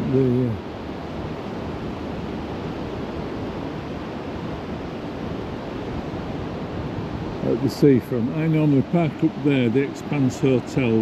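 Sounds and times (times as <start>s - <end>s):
sea surf: 0.0s - 11.0s
wind: 0.0s - 11.0s.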